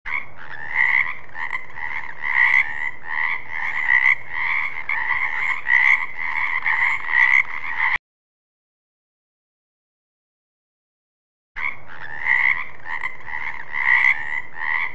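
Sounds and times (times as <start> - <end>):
frogs croaking in chorus: 0.1 - 8.0, 11.6 - 14.9.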